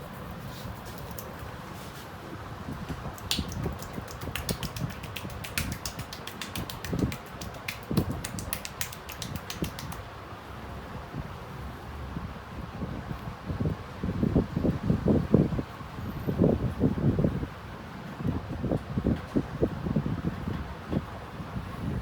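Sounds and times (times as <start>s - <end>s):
hands slapping a head: 3.0s - 10.0s.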